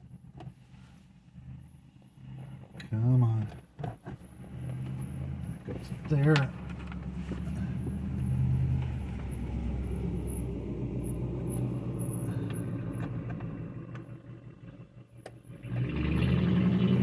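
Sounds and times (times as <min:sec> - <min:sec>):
low engine-like rumble: 0:00.0 - 0:15.7.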